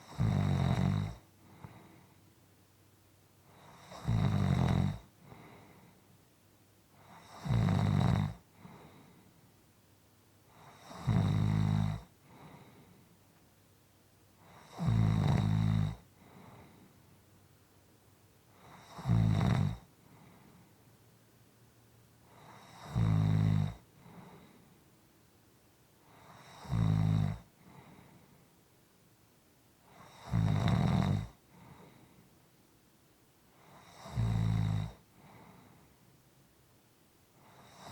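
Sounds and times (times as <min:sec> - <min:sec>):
person snoring: 0:00.0 - 0:01.9, 0:03.5 - 0:05.8, 0:07.0 - 0:09.2, 0:10.5 - 0:12.8, 0:14.5 - 0:16.8, 0:18.6 - 0:19.9, 0:22.3 - 0:24.6, 0:26.1 - 0:27.9, 0:29.9 - 0:31.9, 0:33.6 - 0:35.6
faint breath: 0:01.4 - 0:02.5, 0:05.2 - 0:06.2, 0:08.5 - 0:09.6, 0:12.2 - 0:13.4, 0:16.1 - 0:17.3, 0:20.0 - 0:21.0, 0:23.9 - 0:25.0, 0:27.5 - 0:28.6, 0:31.4 - 0:32.4, 0:35.1 - 0:36.1.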